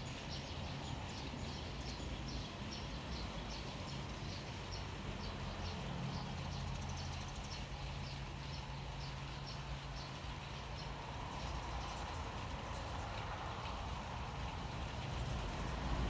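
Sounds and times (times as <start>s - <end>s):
steady rain hiss: 0.0s - 16.0s.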